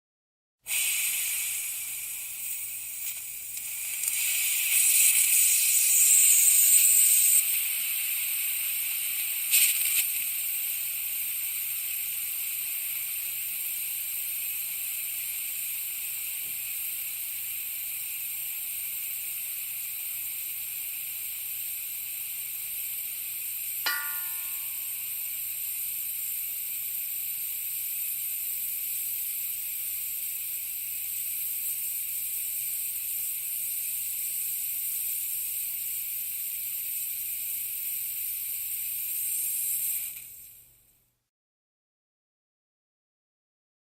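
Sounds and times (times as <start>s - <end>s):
gas hissing from cylinder: 0.6s - 41.1s.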